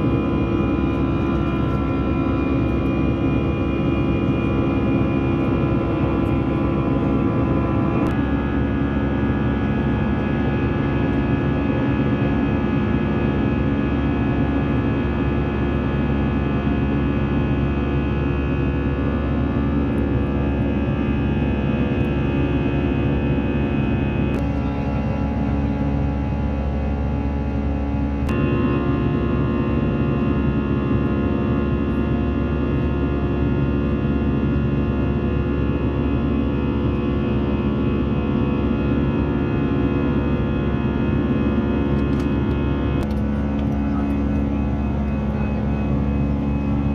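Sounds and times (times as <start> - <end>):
jet engines from cabin: 0.0 - 46.9.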